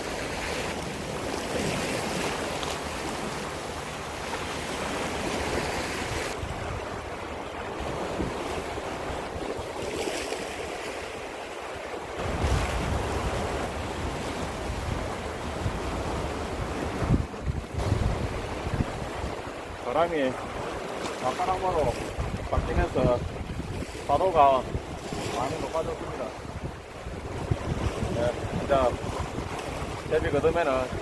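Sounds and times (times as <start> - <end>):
sea waves washing ashore: 0.0 - 31.0
wind buffeting microphone: 4.8 - 10.0, 12.1 - 31.0.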